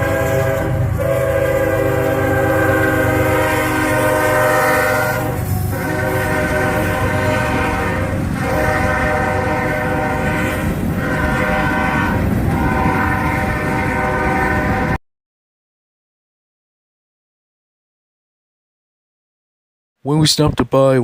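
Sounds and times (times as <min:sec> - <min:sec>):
locomotive air horn blasts: 0:00.0 - 0:15.0
train rumbling past: 0:00.0 - 0:15.0.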